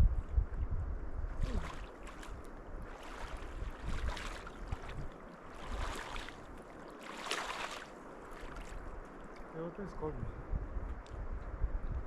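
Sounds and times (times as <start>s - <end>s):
wind rumble on microphone: 0.0s - 12.0s
water splashing: 1.4s - 9.6s.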